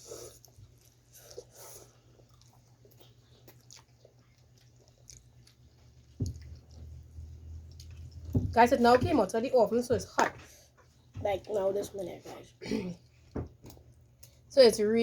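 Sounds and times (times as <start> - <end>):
chewing and biting pizza: 0.0 - 8.4.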